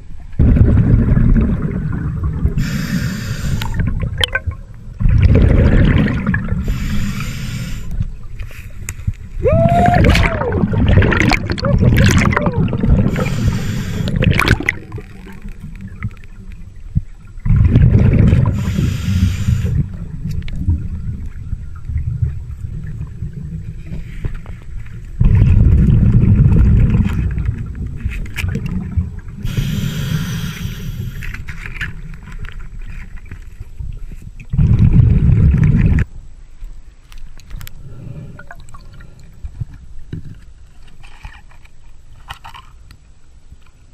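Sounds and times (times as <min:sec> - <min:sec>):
exhaled bubbles rumbling underwater: 0:00.0 - 0:36.1
scuba regulator hissing inhales: 0:02.6 - 0:03.8, 0:06.6 - 0:08.8, 0:13.0 - 0:14.4, 0:18.4 - 0:19.9, 0:29.4 - 0:31.4.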